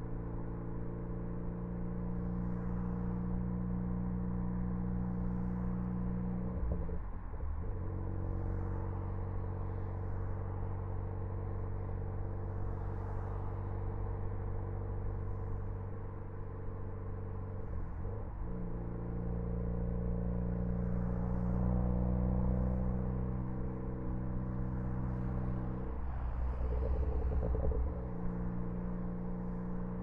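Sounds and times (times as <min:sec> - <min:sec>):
car engine droning: 0:00.0 - 0:30.0.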